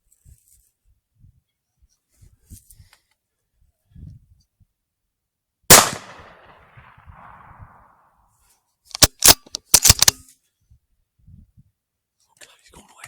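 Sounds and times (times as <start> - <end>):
loud gunshot with echo: 5.7 - 7.6
sharp mechanical clicks: 8.9 - 10.2.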